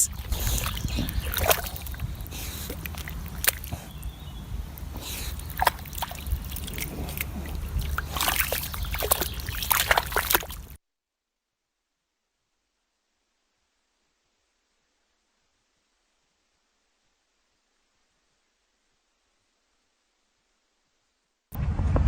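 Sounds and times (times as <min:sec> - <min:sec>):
steady low rumble: 0:00.0 - 0:09.7, 0:21.6 - 0:22.0
muddy water sloshing: 0:00.0 - 0:10.8.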